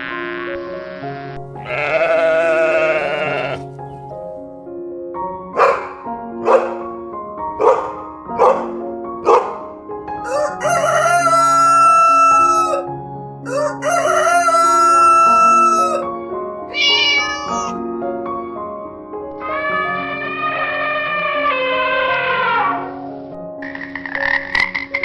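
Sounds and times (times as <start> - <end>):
background music: 0.0 - 25.0
rooster crowing: 1.7 - 3.6, 10.2 - 12.8, 13.5 - 16.0.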